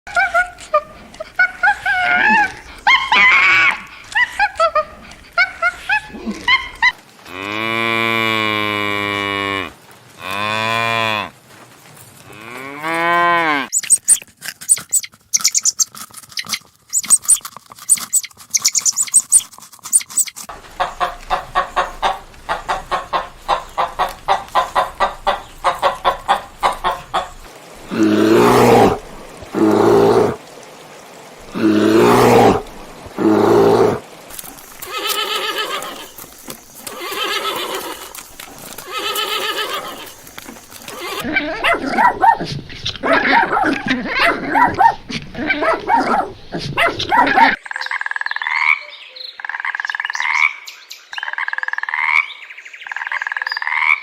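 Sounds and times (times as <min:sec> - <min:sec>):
high chirping calls: 0:13.7 - 0:27.5
deep mooing calls: 0:20.7 - 0:30.4.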